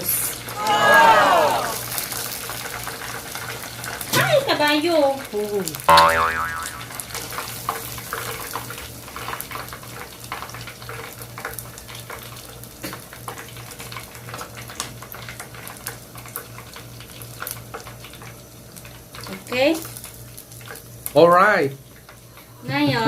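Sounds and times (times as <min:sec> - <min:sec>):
hot oil crackling and popping: 0:01.7 - 0:22.6.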